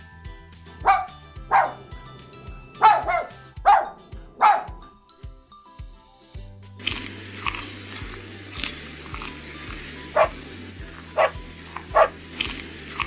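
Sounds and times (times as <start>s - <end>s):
background music with steady beat: 0.0s - 13.0s
puppy barking: 0.8s - 2.0s, 2.8s - 4.9s, 9.2s - 12.6s.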